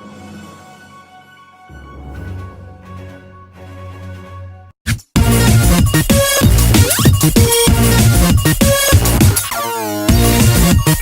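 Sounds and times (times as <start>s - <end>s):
electronic music with driving beat: 4.9s - 11.0s.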